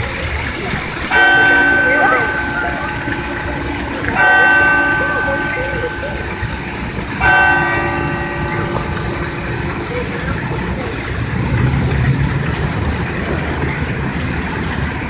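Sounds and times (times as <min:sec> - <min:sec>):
church bell ringing: 0:01.0 - 0:12.0.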